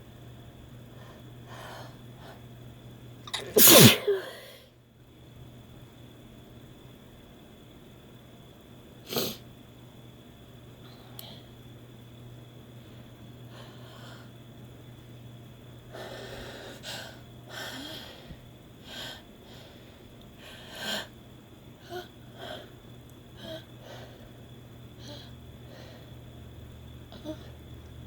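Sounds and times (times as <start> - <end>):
woman sniffing and snorting: 3.4 - 4.2, 9.1 - 9.4.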